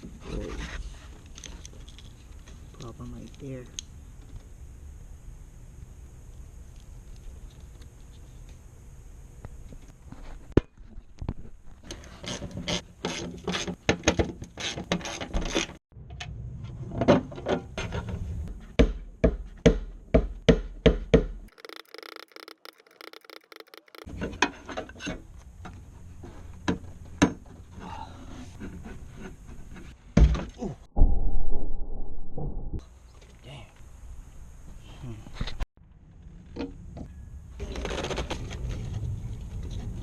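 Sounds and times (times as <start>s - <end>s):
metal parts knocking and rubbing: 21.5s - 24.1s
ratchet clicking: 21.5s - 24.1s.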